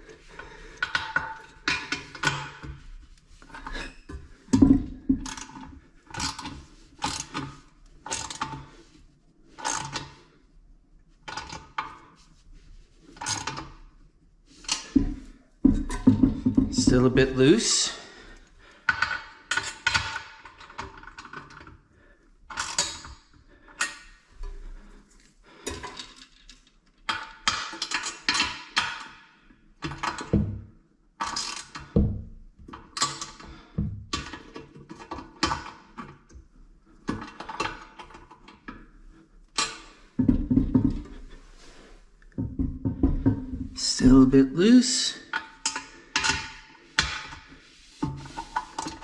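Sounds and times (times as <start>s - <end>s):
hand tools clicking and clattering: 45.2s - 49.0s.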